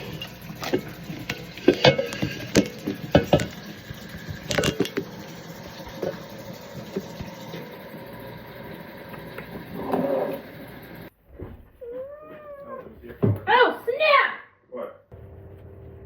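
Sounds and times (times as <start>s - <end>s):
knocks and clatters: 0.2s - 5.2s.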